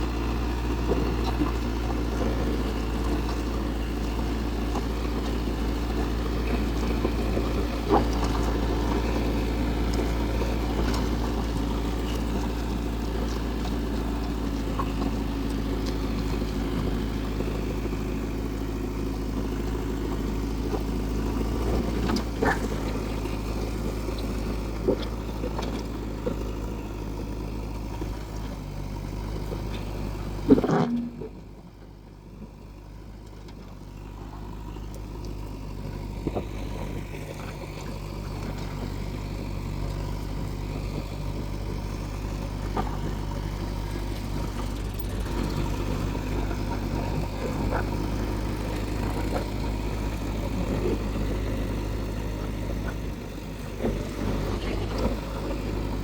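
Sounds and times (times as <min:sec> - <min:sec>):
diesel engine running: 0:00.0 - 0:56.0.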